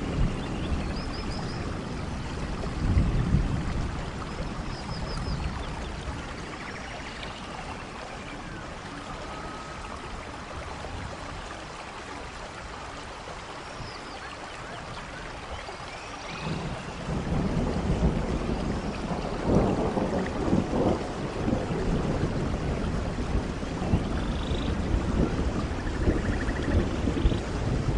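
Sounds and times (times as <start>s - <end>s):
thunder rumbling: 0.0s - 7.0s, 16.3s - 27.9s
rain falling: 0.0s - 27.9s.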